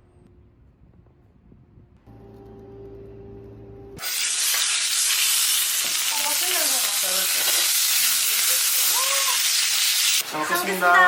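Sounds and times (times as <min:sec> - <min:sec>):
low hum: 0:00.0 - 0:04.0
food sizzling in a pan: 0:04.0 - 0:11.0.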